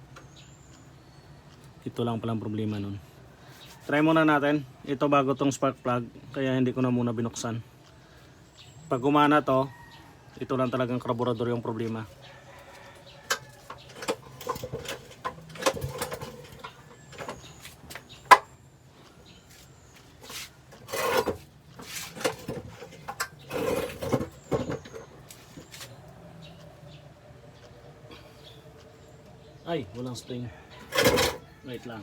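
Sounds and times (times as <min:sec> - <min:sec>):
clicks and knocks on engine: 0:13.0 - 0:18.6, 0:20.7 - 0:25.7, 0:30.8 - 0:31.6
short scraping rasps: 0:19.5 - 0:26.0, 0:30.8 - 0:31.5.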